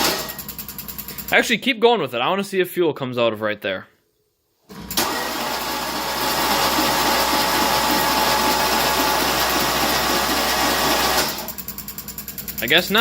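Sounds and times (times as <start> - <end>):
starter motor cranking engine: 0.0 - 1.4, 4.7 - 13.0.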